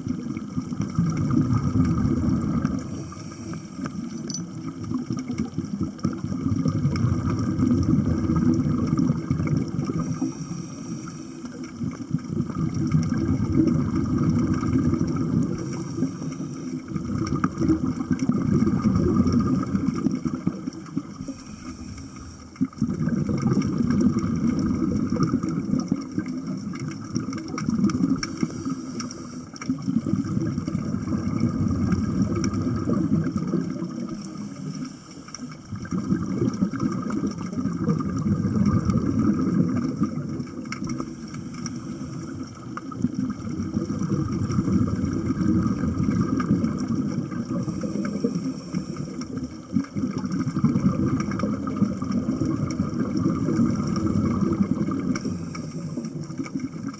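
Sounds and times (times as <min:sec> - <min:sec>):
exhaled bubbles rumbling underwater: 0:00.0 - 0:56.9
regulator hiss on inhale: 0:02.6 - 0:04.3, 0:09.9 - 0:11.9, 0:15.4 - 0:17.1, 0:21.1 - 0:22.8, 0:28.0 - 0:30.3, 0:34.0 - 0:35.8, 0:40.8 - 0:42.8, 0:47.5 - 0:49.6, 0:54.9 - 0:56.6.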